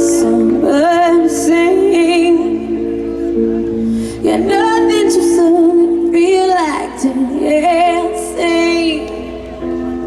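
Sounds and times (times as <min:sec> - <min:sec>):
woman singing with vibrato: 0:04.2 - 0:09.4.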